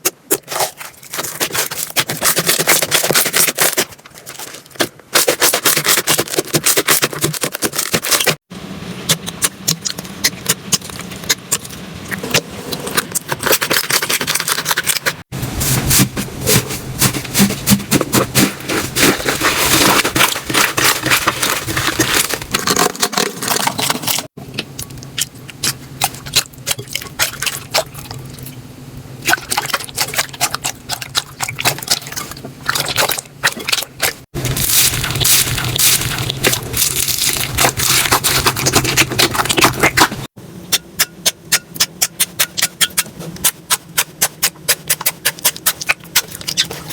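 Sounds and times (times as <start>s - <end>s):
slime crackling and popping under hands: 34.5s - 40.2s.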